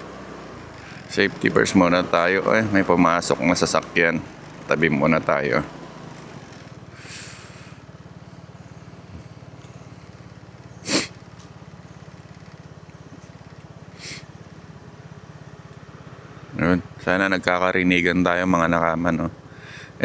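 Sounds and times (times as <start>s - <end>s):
motorcycle engine idling: 0.0s - 20.0s
person sniffing: 7.0s - 7.8s, 10.8s - 11.2s, 14.0s - 14.3s.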